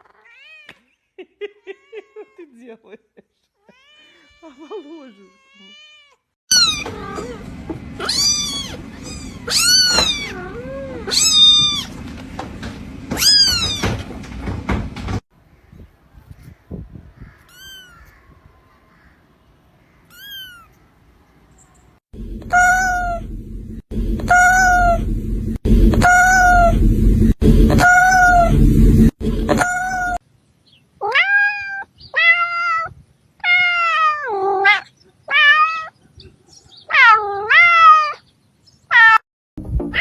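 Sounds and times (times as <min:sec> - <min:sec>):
kittens meowing: 0:08.0 - 0:11.9, 0:17.4 - 0:18.2, 0:20.1 - 0:20.8
low hum: 0:22.2 - 0:30.2.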